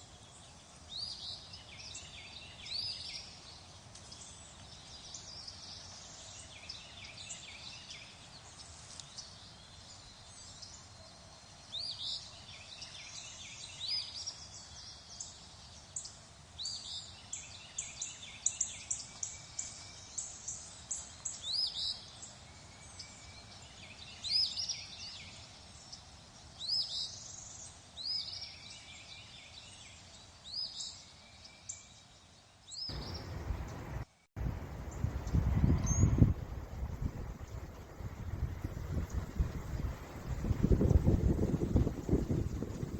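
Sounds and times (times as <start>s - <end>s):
soft outdoor hiss: 0.0s - 42.9s
songbirds chirping: 0.0s - 42.9s
low rumbling noise: 32.9s - 42.9s.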